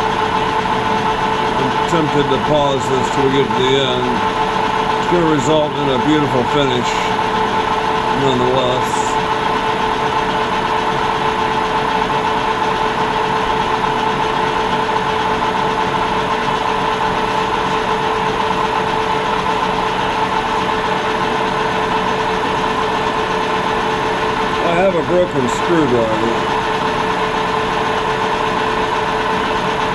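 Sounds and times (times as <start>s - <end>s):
metal lathe humming: 0.0s - 29.9s.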